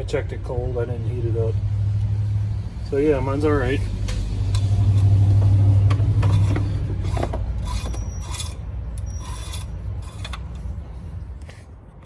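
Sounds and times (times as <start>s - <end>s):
low hum: 1.6s - 11.4s
scraping and rubbing: 4.6s - 11.7s.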